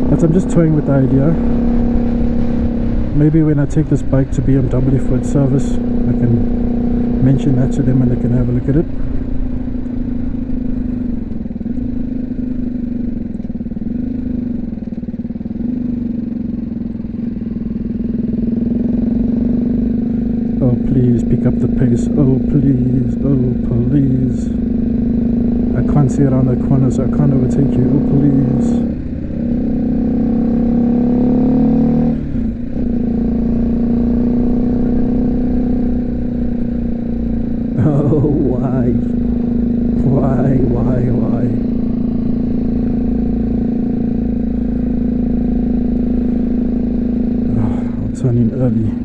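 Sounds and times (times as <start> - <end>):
wind rumble on microphone: 0.0 - 6.7
motorcycle engine running: 0.0 - 49.0.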